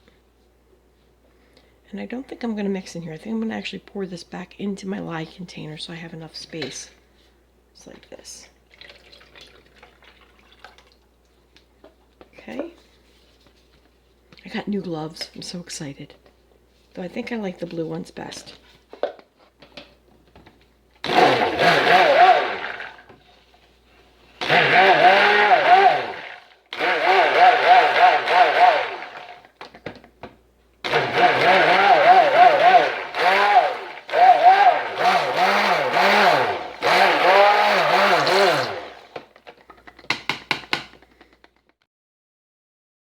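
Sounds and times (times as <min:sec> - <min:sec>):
stick blender motor running: 0:21.0 - 0:23.1, 0:24.4 - 0:29.5, 0:30.8 - 0:39.3.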